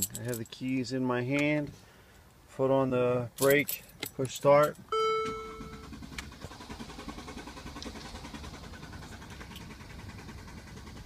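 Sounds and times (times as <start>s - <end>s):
low hum: 4.9s - 11.0s.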